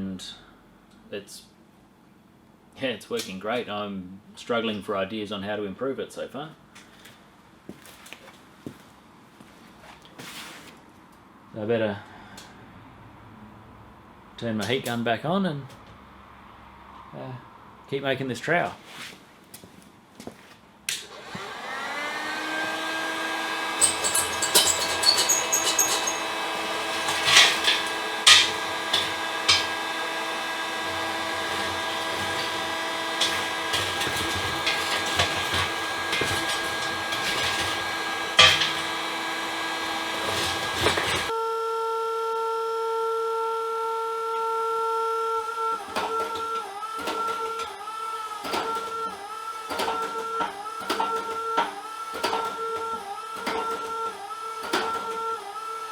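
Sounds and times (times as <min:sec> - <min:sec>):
heat gun fan whine: 0:20.9 - 0:41.4
metal clinks and knocks: 0:23.8 - 0:29.9, 0:33.2 - 0:39.2.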